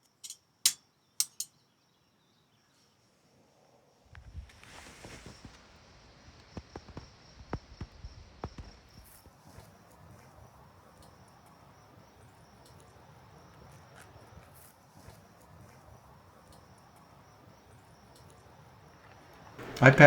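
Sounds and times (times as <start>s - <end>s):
wood fire crackling: 18.0s - 20.0s
fire hissing: 18.7s - 20.0s.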